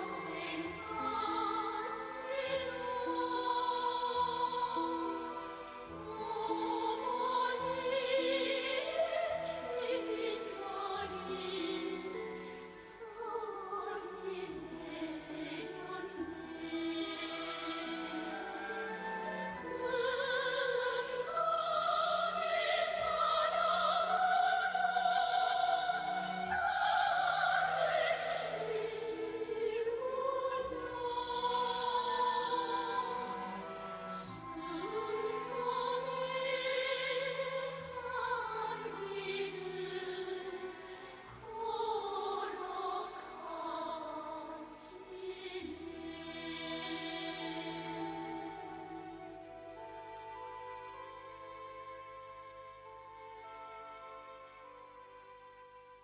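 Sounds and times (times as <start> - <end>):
orchestra playing: 0.0 - 43.8
operatic singing: 0.0 - 51.4.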